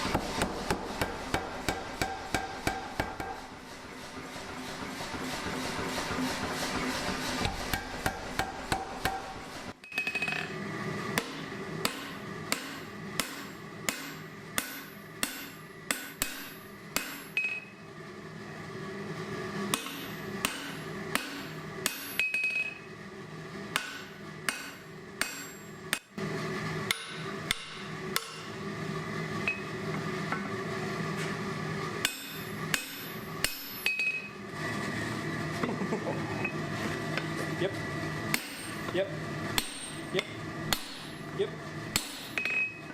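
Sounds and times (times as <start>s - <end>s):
hammer striking hot steel: 0.0s - 17.7s, 19.7s - 22.9s, 23.7s - 26.2s, 26.8s - 28.5s, 32.0s - 34.3s, 38.3s - 41.3s, 41.9s - 42.8s
anvil ringing: 19.8s - 22.8s, 23.8s - 25.8s, 32.0s - 34.3s, 38.3s - 38.9s, 39.6s - 41.2s, 42.0s - 42.8s.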